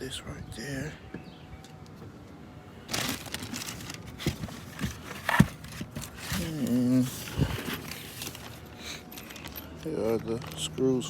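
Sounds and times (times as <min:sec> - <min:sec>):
rustling: 0:02.9 - 0:10.7.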